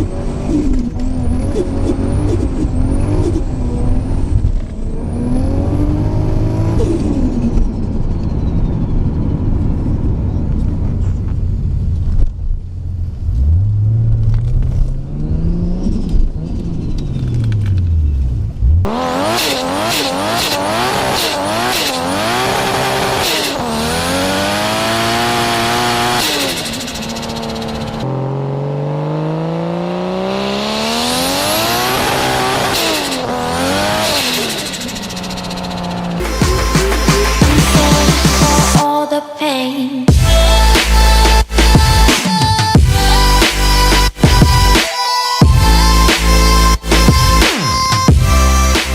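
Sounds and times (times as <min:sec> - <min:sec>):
car engine revving: 0:00.0 - 0:38.8
exhaust cracks: 0:09.5 - 0:28.4, 0:31.1 - 0:38.8.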